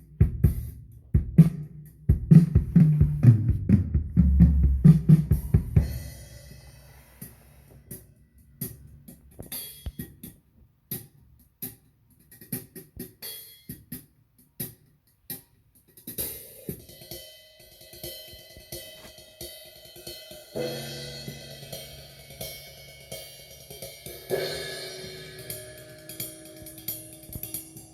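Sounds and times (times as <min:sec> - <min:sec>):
drum-heavy music over loudspeakers: 0:00.0 - 0:17.0.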